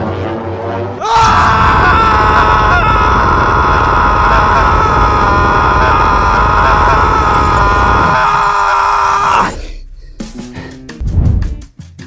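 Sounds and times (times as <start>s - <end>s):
stadium crowd screaming and cheering: 1.0s - 9.5s.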